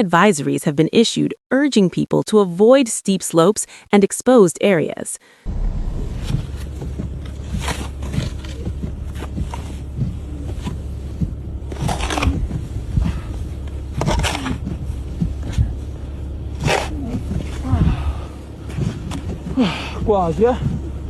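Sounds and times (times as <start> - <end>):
wind buffeting microphone: 5.5 - 9.5.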